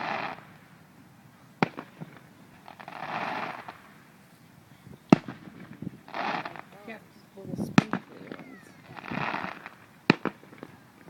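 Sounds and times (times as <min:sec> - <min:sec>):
fireworks bang: 0:00.0 - 0:00.6, 0:01.6 - 0:04.0, 0:05.1 - 0:07.0, 0:07.6 - 0:11.0
fireworks popping: 0:00.0 - 0:00.7, 0:01.6 - 0:11.0.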